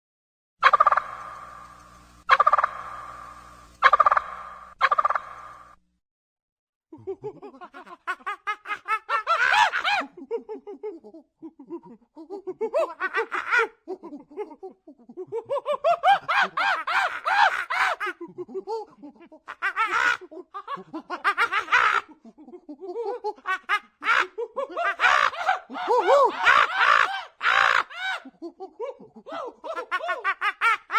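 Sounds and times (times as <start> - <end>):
human laughter: 6.9 - 30.9.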